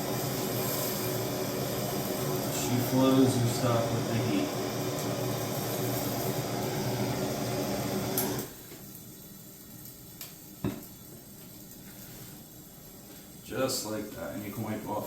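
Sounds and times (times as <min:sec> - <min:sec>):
torch flame roaring: 0:00.0 - 0:08.6.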